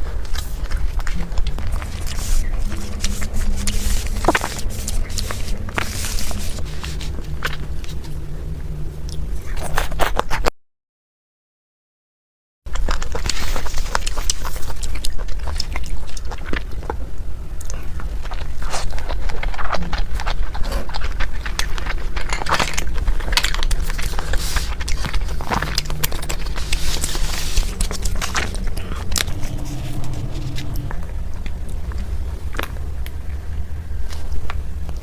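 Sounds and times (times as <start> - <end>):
steady low hum: 0.0 - 10.4, 23.8 - 34.9.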